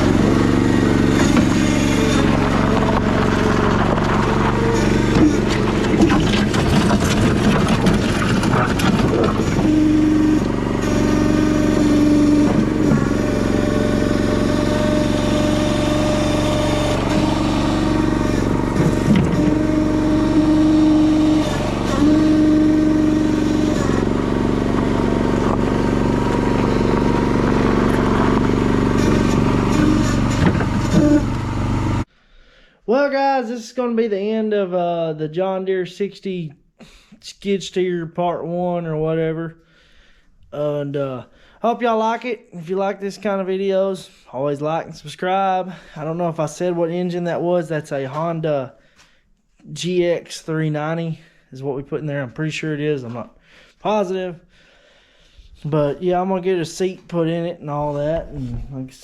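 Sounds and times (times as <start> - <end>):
engine running steadily: 0.0 - 32.1.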